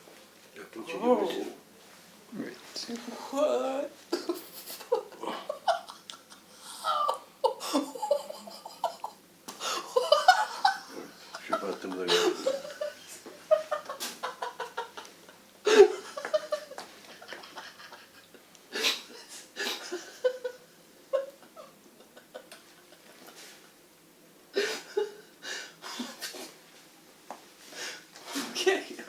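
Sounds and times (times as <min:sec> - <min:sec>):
people laughing and giggling: 0:04.1 - 0:23.8.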